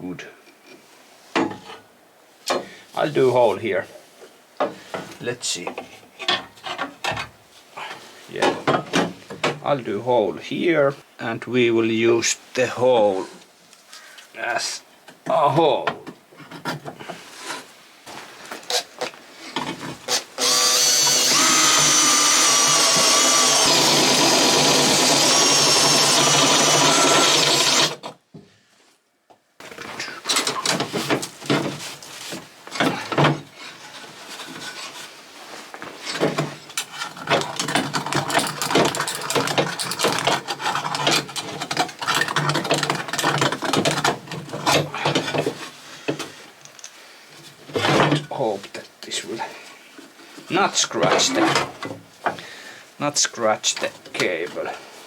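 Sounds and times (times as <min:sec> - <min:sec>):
power drill whirring: 0:20.1 - 0:28.0
clicks and scraping: 0:36.0 - 0:47.0.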